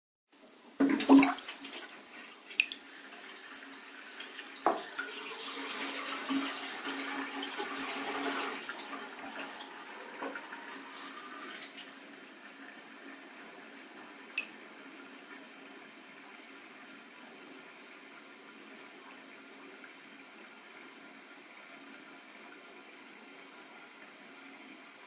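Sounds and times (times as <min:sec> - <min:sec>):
water gurgling down a drain: 0:00.8 - 0:25.0
sharp clicks of drips: 0:01.2 - 0:02.8, 0:14.3 - 0:14.6.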